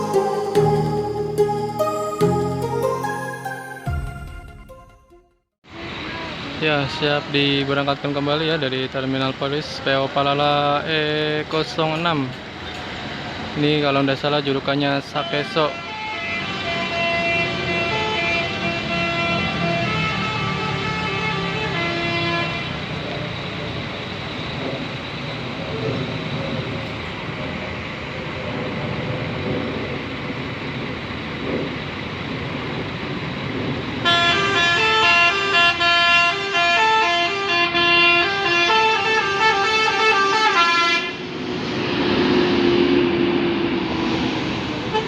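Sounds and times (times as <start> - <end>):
bus horn playing a tune: 0.0 - 4.4, 15.2 - 23.0, 34.0 - 41.3
vehicle noise: 5.6 - 45.0
held horn tone: 15.2 - 22.9, 34.0 - 41.5.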